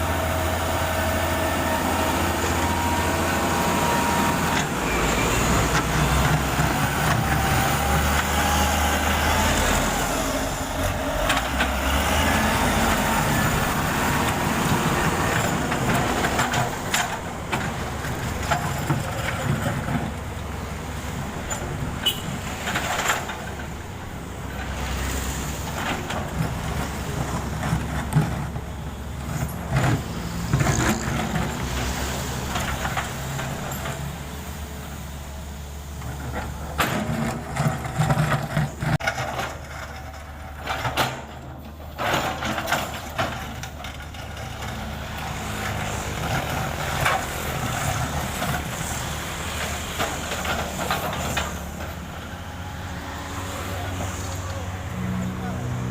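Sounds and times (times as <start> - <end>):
diesel machinery droning: 0.0 - 55.9
metal clanks and knocks: 36.0 - 44.9.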